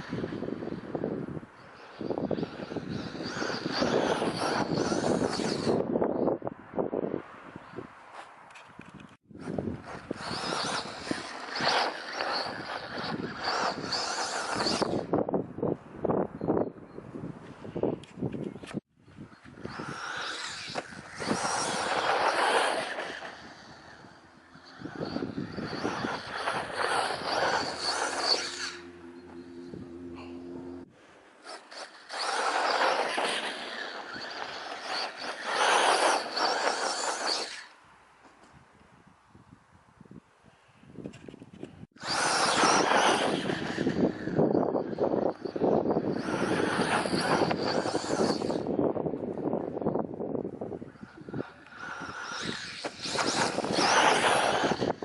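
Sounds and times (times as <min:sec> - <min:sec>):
wind buffeting microphone: 0:00.0 - 0:30.9, 0:38.4 - 0:55.0
electric motor whining: 0:09.4 - 0:15.2, 0:19.3 - 0:37.7, 0:42.0 - 0:48.8, 0:50.8 - 0:55.0.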